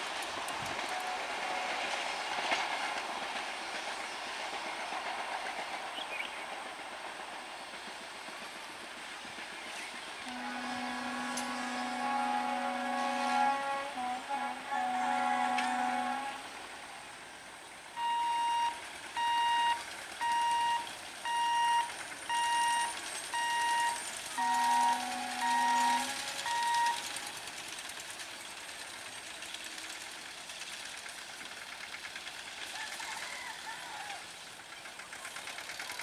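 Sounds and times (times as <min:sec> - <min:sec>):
diesel locomotive horn: 0:00.5 - 0:03.5, 0:10.2 - 0:27.8
short high-pitched beeps: 0:18.0 - 0:27.1.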